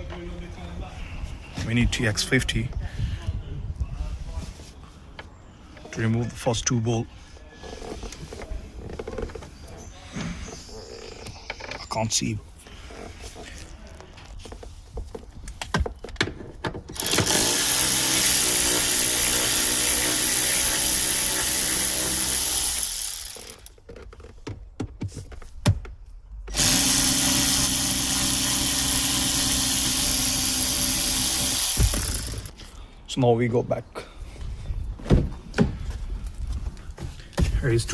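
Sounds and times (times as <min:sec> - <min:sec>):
power driver running: 0:17.0 - 0:23.7, 0:26.5 - 0:32.6.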